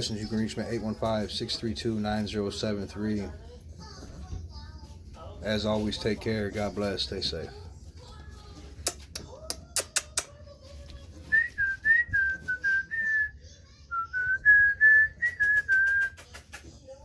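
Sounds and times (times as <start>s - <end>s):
person whistling a tune: 11.3s - 13.3s, 14.0s - 16.2s.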